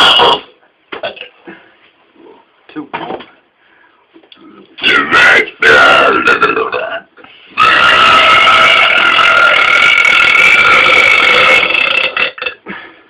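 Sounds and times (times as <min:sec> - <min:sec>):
man burping: 0:00.0 - 0:01.4, 0:05.0 - 0:12.8.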